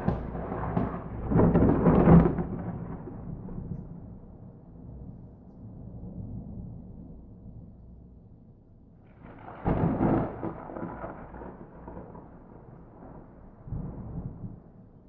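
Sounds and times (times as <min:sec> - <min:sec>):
thunder crack: 0:00.0 - 0:03.6, 0:09.2 - 0:14.7
rolling thunder rumble: 0:00.0 - 0:05.1, 0:09.1 - 0:15.0.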